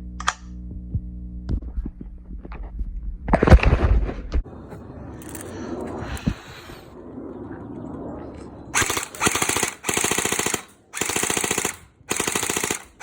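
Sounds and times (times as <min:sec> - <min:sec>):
airsoft gun firing bursts: 0:08.8 - 0:13.0.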